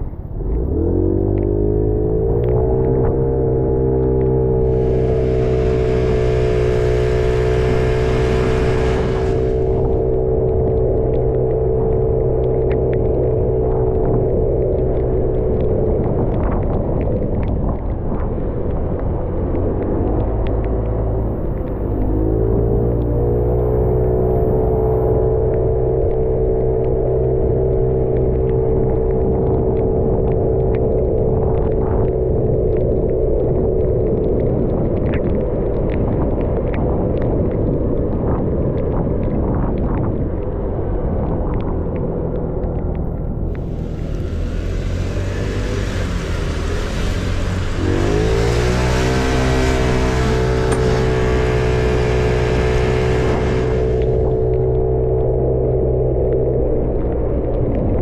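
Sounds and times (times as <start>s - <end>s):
scooter engine rumble: 0.0s - 16.8s, 42.9s - 54.9s
road noise: 0.0s - 58.0s
wind rumble: 0.0s - 58.0s
light ticks: 0.1s - 4.4s, 9.2s - 47.0s, 47.6s - 58.0s
scooter engine riding: 42.9s - 54.7s.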